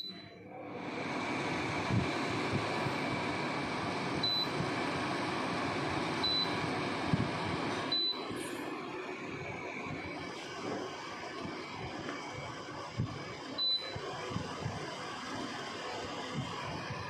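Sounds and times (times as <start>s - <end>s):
air conditioner fan rushing: 0.5s - 17.0s.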